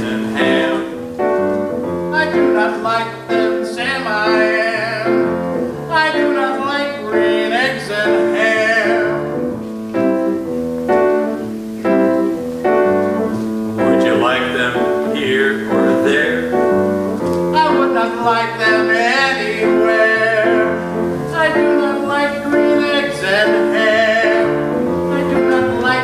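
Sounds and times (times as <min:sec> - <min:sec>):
man singing with vibrato: 0:00.0 - 0:01.4, 0:02.1 - 0:09.4, 0:13.8 - 0:16.9, 0:17.5 - 0:26.0
piano accompaniment: 0:00.0 - 0:26.0.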